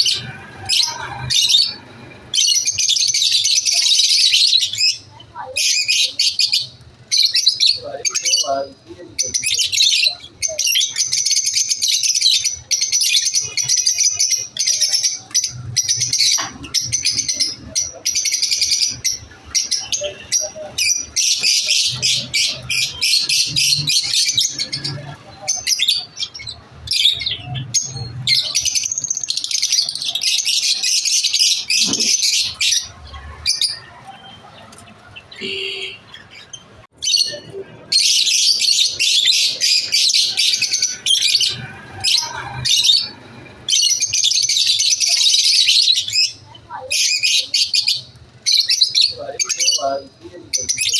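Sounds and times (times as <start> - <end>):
lovebirds chirping: 0.0 - 50.9.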